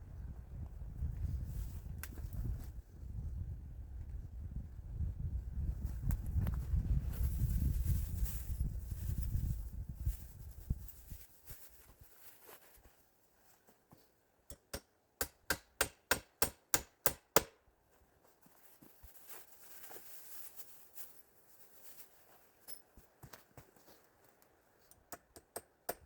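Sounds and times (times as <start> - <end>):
faint rustle: 5.7 - 14.2, 17.8 - 25.0.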